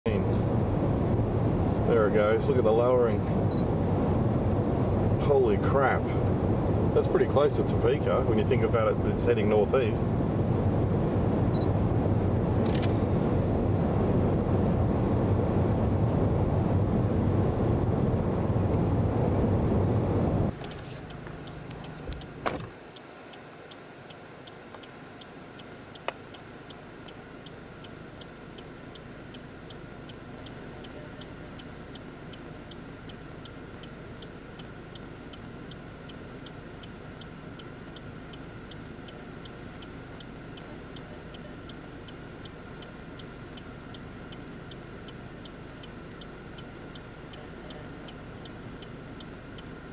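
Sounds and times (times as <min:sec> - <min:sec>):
quiet cabin hum: 0:00.1 - 0:49.9
wind and road noise in car: 0:00.1 - 0:49.9
car indicator ticking: 0:21.0 - 0:49.9.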